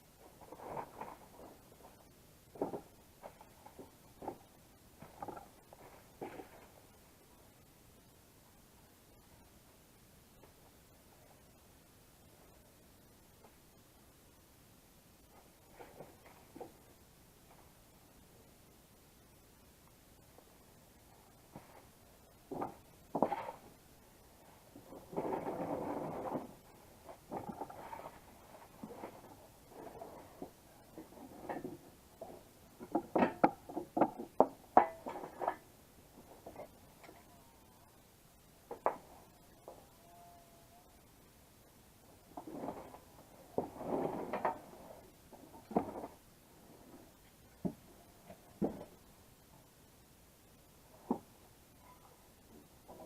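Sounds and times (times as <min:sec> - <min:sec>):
scraping rustle: 0:24.8 - 0:32.4, 0:42.3 - 0:47.3.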